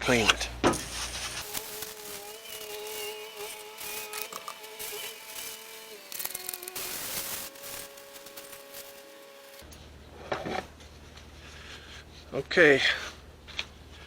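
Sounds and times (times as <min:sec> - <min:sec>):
garden sprayer hissing: 0:00.7 - 0:09.8
steady pitched whine: 0:00.8 - 0:09.8.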